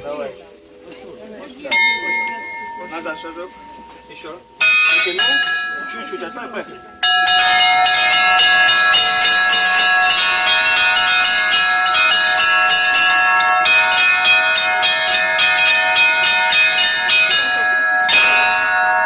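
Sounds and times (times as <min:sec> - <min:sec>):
large bells ringing: 0:00.3 - 0:19.0
small bells struck rapidly: 0:01.7 - 0:19.0.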